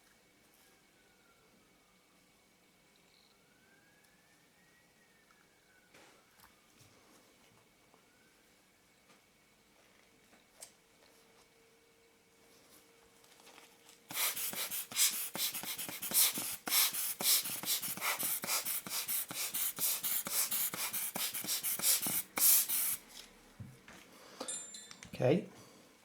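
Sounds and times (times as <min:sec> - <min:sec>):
rubber lens blower puffing air: 0:14.1 - 0:23.1.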